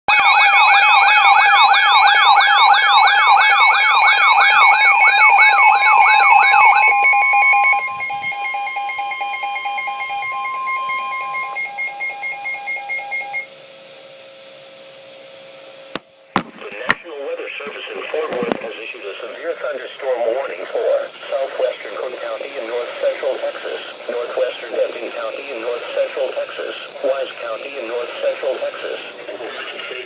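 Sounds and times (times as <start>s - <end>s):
warbling siren tone: 0.1s - 13.4s
pulsing beeps: 4.1s - 13.5s
steady alert tones: 5.0s - 12.7s
faint hum: 5.8s - 30.0s.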